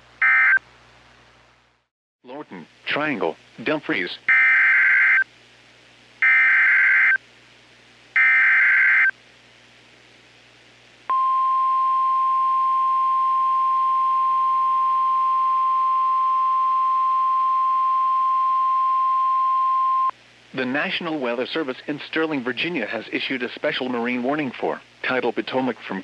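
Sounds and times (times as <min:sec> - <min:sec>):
steady warning alarm tone: 0:00.2 - 0:00.6, 0:04.3 - 0:05.2, 0:06.2 - 0:07.2, 0:08.2 - 0:09.1, 0:11.1 - 0:20.1
screeching data bursts: 0:08.2 - 0:09.1.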